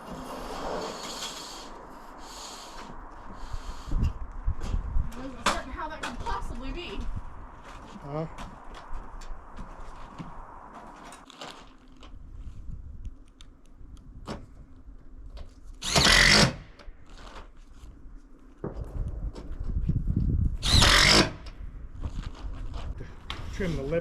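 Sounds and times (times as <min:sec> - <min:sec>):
power drill driving screws into metal: 0:15.8 - 0:16.7, 0:20.6 - 0:21.5.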